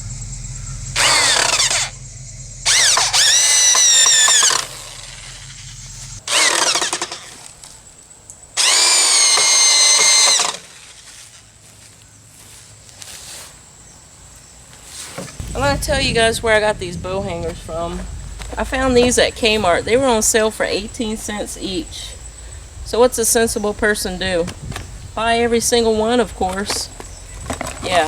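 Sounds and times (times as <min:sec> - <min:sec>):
power drill driving screws: 0:01.0 - 0:02.0, 0:02.7 - 0:05.4, 0:06.3 - 0:07.6, 0:08.6 - 0:11.1.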